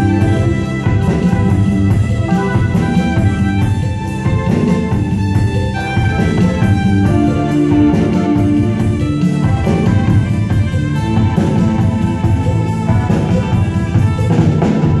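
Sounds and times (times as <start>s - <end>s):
drum kit beat: 0.0s - 15.0s
held instrument notes: 0.0s - 15.0s.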